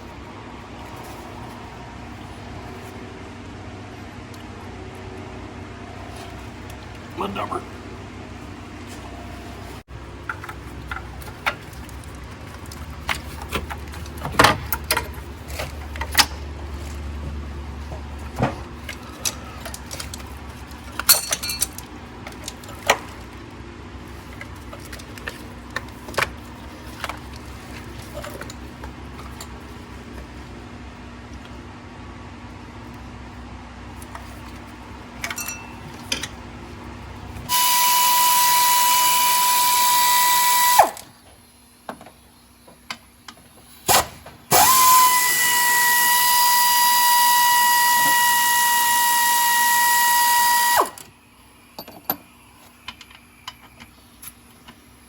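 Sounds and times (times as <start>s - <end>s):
hand tools and metal parts clinking: 10.2s - 23.4s, 24.1s - 30.2s, 34.0s - 36.5s, 51.7s - 54.8s
power tool whine: 37.5s - 41.1s, 44.5s - 51.1s.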